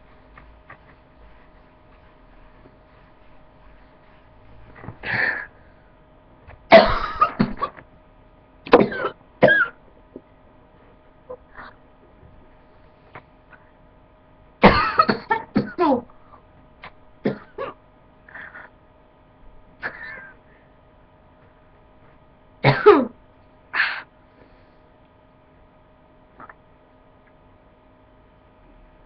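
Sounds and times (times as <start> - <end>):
person coughing: 6.7 - 7.8, 8.7 - 9.8, 14.6 - 16.0, 17.2 - 18.7, 19.8 - 20.4, 22.6 - 23.2.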